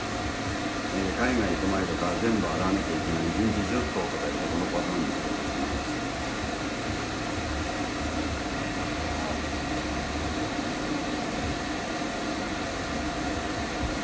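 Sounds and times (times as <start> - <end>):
motor hum: 0.0 - 14.0
pet dryer blowing air: 0.0 - 14.0.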